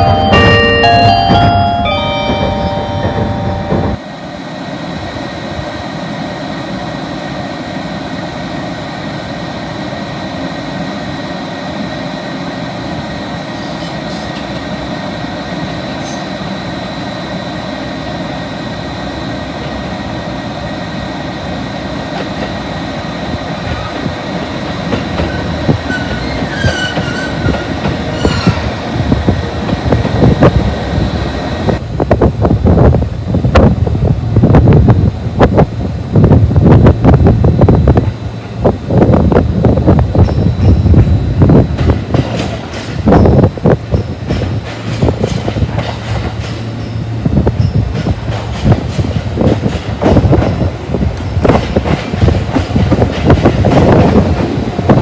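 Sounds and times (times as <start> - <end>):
onboard melody chime: 0.0 - 4.0
train running noise: 0.0 - 55.0
steel wheels squealing on rail: 13.4 - 17.1, 22.2 - 31.8, 39.7 - 41.6, 42.2 - 49.5.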